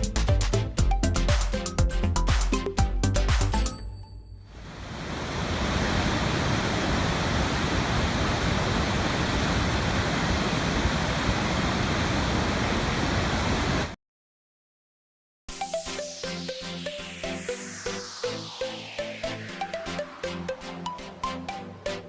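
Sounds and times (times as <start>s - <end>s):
waterfall rushing: 4.6s - 13.9s.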